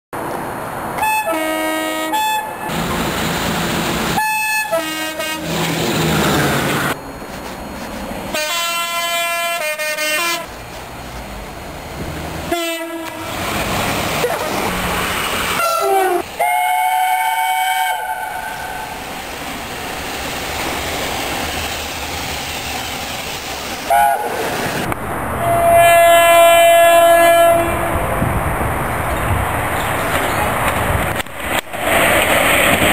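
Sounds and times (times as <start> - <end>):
rumble of trains passing: 0.2 - 32.9
two-tone train horns: 1.0 - 2.8, 4.1 - 5.7, 8.3 - 10.5, 12.4 - 13.4, 15.5 - 19.0, 23.9 - 24.5, 25.3 - 28.1.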